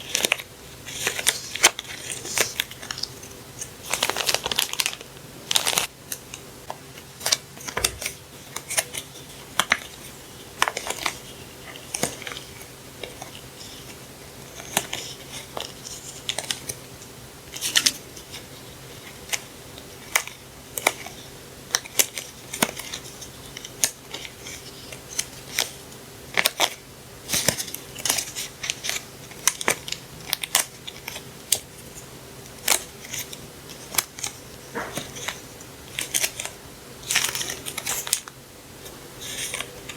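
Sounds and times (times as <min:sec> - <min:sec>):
paper and plastic packaging crinkling: 0:00.0 - 0:06.4, 0:07.2 - 0:16.8, 0:17.5 - 0:39.9
faint steady hum: 0:00.0 - 0:39.9.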